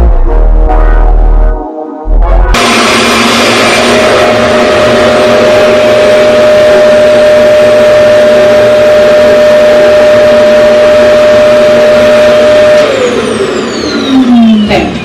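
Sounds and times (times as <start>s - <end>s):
hair dryer running: 2.6s - 14.3s.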